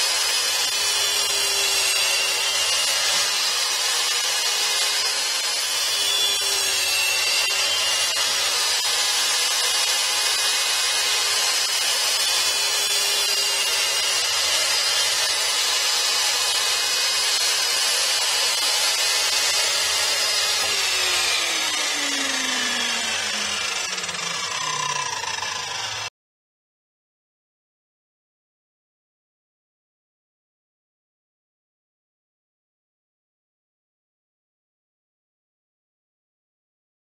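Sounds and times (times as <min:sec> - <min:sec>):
mitre saw running: 0:00.0 - 0:26.1.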